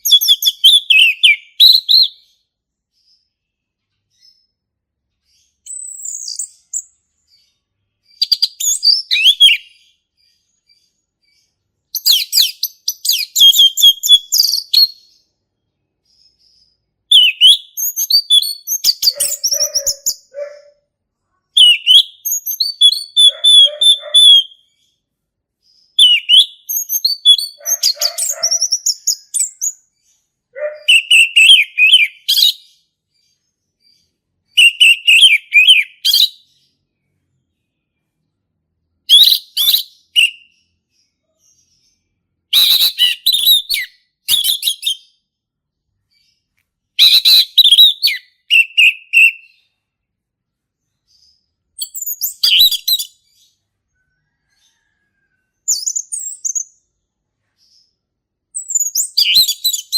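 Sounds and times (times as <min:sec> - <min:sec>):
thrush singing whistled phrases: 0:00.0 - 0:02.2, 0:08.2 - 0:09.7, 0:12.0 - 0:15.1, 0:17.1 - 0:20.3, 0:21.6 - 0:24.6, 0:26.0 - 0:29.6, 0:30.9 - 0:32.6, 0:34.6 - 0:36.4, 0:39.1 - 0:40.5, 0:42.5 - 0:45.1, 0:47.0 - 0:49.5, 0:51.8 - 0:53.2, 0:58.6 - 0:59.9.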